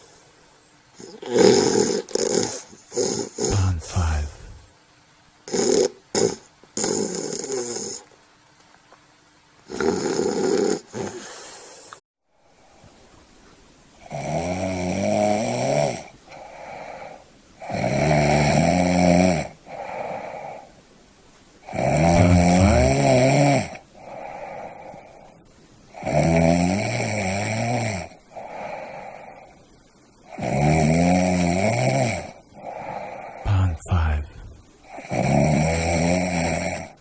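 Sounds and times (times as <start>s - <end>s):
loud snoring: 1.0s - 4.6s, 5.5s - 8.1s, 9.7s - 11.9s, 14.0s - 20.6s, 21.6s - 25.0s, 25.9s - 29.2s, 30.3s - 34.3s, 34.9s - 37.0s
soft breath: 3.5s - 4.7s, 16.3s - 17.3s, 19.7s - 20.8s, 23.9s - 25.6s, 28.3s - 29.8s, 32.5s - 34.7s.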